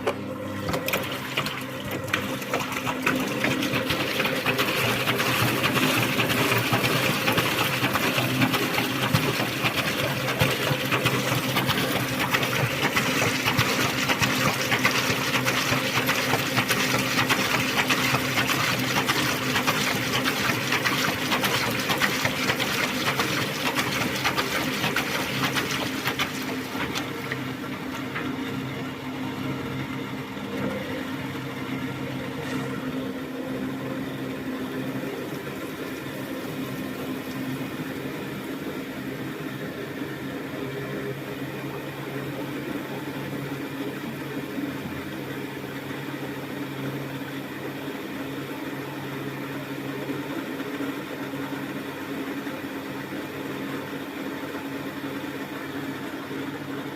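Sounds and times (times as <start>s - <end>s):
water rushing in: 0.0s - 28.0s
washing machine motor hum: 0.0s - 56.9s.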